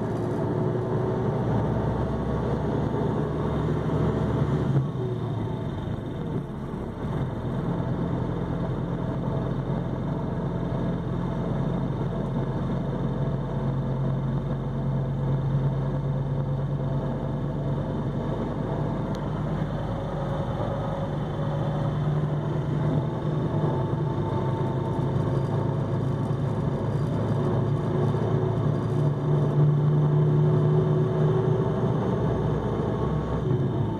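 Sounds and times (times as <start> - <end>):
bus diesel engine droning: 0.0 - 33.9.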